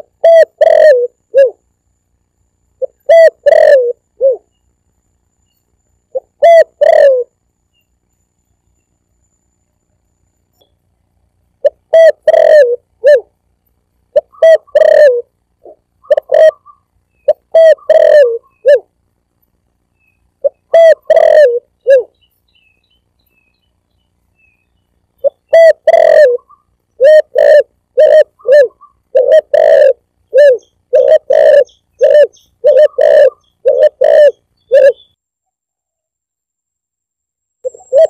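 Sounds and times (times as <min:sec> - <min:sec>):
dove cooing: 0:00.0 - 0:01.6, 0:02.8 - 0:04.5, 0:06.1 - 0:07.4, 0:11.6 - 0:13.3, 0:14.1 - 0:18.9, 0:20.4 - 0:22.2, 0:25.2 - 0:35.1, 0:37.7 - 0:38.0.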